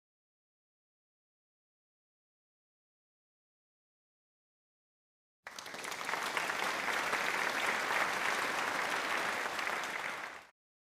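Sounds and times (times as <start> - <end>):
crowd applauding: 5.5 - 10.6.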